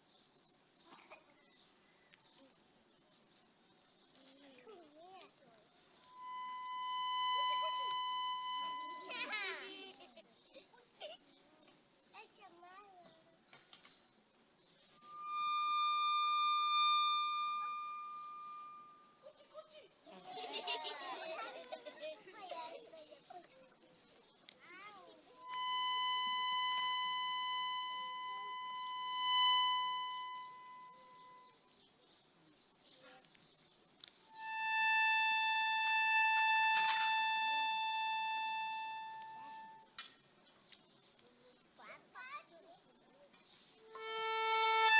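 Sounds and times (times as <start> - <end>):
held high musical note: 6.0 - 9.8, 15.0 - 19.2, 25.4 - 31.6, 34.3 - 40.0, 43.9 - 44.9.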